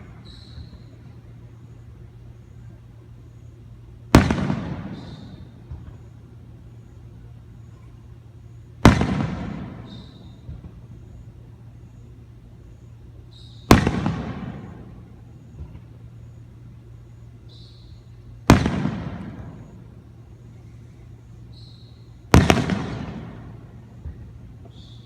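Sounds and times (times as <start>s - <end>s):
loud fireworks bangs with echo: 4.1s - 6.0s, 8.8s - 10.8s, 13.7s - 15.0s, 18.4s - 19.9s, 22.3s - 25.0s.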